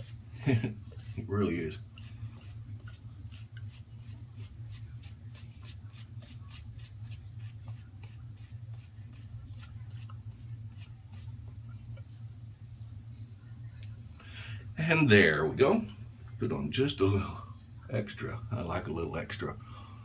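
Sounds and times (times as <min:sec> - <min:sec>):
shaving brush working lather: 0:00.0 - 0:11.5
low steady hum: 0:00.0 - 0:20.0.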